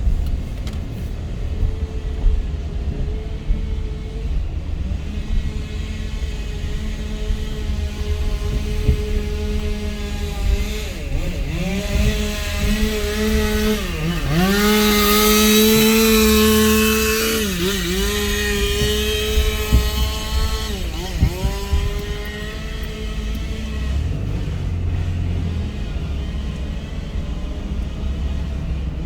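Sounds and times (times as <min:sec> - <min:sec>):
chainsaw running at high revs: 0:04.8 - 0:29.0.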